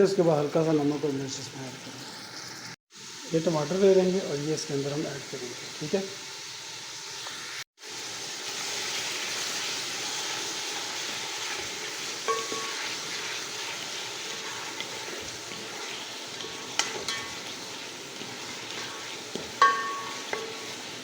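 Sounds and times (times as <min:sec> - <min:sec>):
food sizzling in oil: 0:00.0 - 0:21.0
metal utensil clinking on pot: 0:12.3 - 0:13.2, 0:16.4 - 0:17.6, 0:18.7 - 0:20.8.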